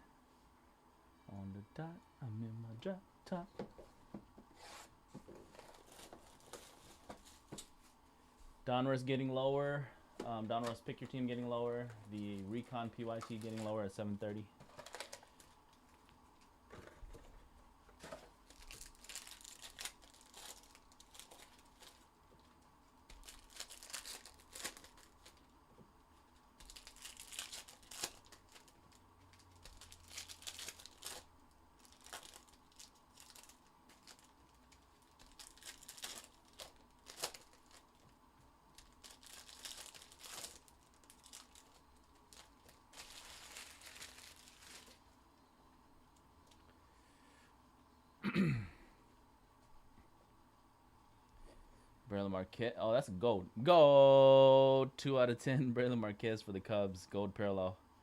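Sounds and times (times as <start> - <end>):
plastic wrapping tearing: 14.7 - 15.8, 18.4 - 22.1, 23.1 - 25.5, 26.6 - 38.1, 38.7 - 45.0.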